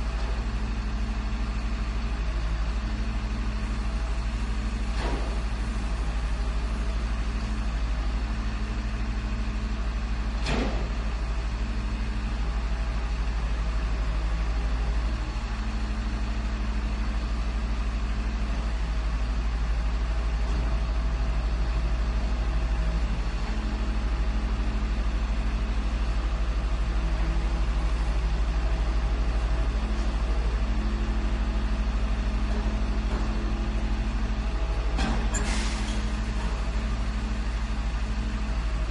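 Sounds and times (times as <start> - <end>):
garbage truck engine idling: 0.0 - 38.9.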